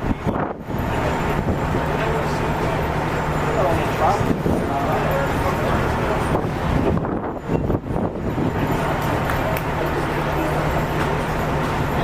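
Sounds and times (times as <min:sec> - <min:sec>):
low engine hum: 0:00.0 - 0:12.0
street noise: 0:00.0 - 0:12.0.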